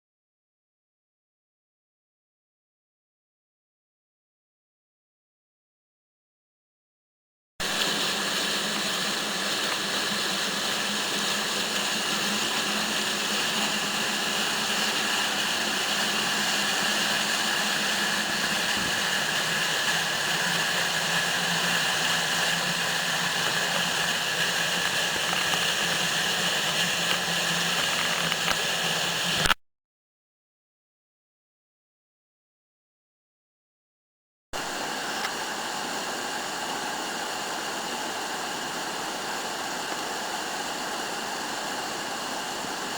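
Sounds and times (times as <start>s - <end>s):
river water rushing: 7.6s - 29.5s, 34.6s - 42.9s.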